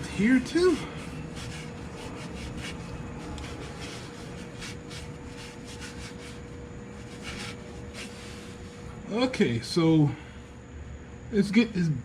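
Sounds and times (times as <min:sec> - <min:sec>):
rag rubbing engine parts: 0:00.0 - 0:09.0
faint hum: 0:00.0 - 0:12.0.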